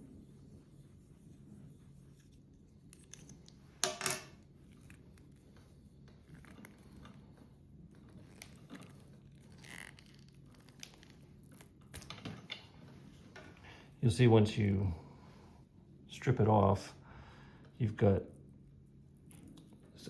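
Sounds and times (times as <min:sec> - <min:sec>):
cable stripper scraping jacket: 0:09.4 - 0:10.8.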